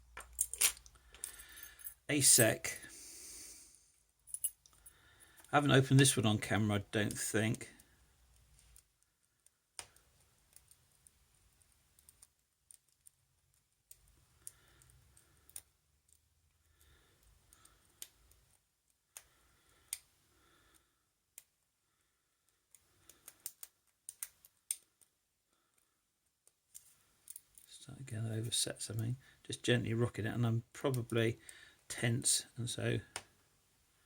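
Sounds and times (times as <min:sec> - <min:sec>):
lock pick clicking and scraping: 0:22.5 - 0:25.2.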